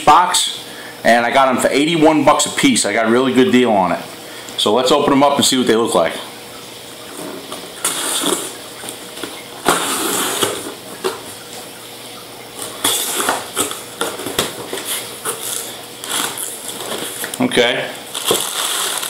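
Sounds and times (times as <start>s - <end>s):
cardboard tearing and rustling: 12.7s - 17.3s, 18.0s - 19.0s.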